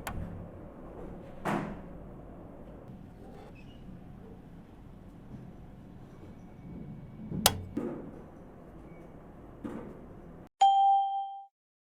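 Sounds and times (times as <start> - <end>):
bright ding: 10.6 - 11.5.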